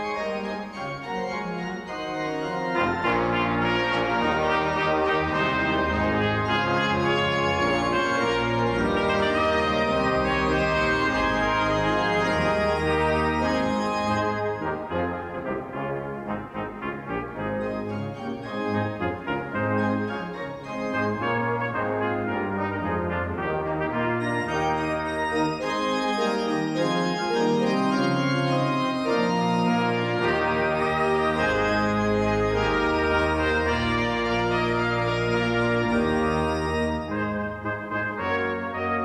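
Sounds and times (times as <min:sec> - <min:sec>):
brass ensemble playing chords: 0:00.0 - 0:39.0
pipe organ deep bass notes: 0:00.1 - 0:39.0.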